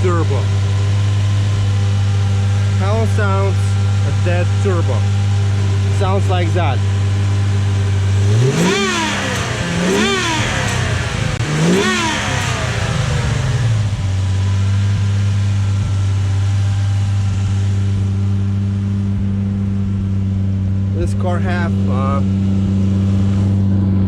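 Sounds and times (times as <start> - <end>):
car engine idling and revving: 0.0 - 24.0.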